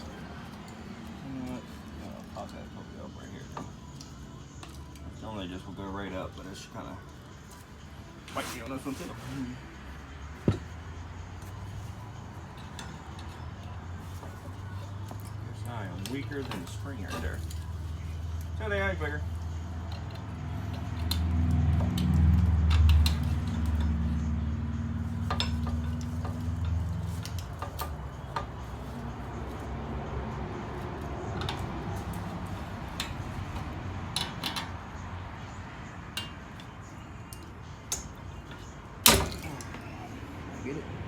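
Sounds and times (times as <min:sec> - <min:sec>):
metal clinks and clicks: 0:25.2 - 0:28.6.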